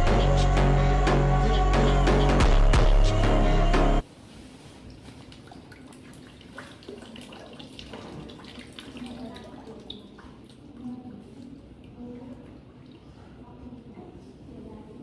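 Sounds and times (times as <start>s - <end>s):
background music: 0.0s - 4.0s
water trickling and dripping: 4.9s - 13.9s.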